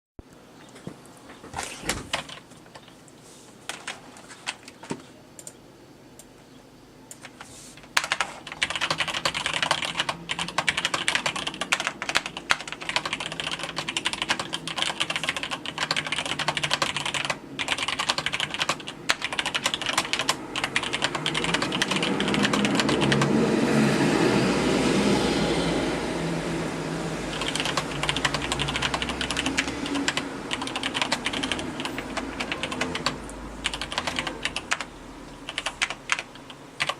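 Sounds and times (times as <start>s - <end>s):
mechanical keyboard typing: 2.1s - 2.9s, 7.1s - 23.4s, 27.3s - 36.9s.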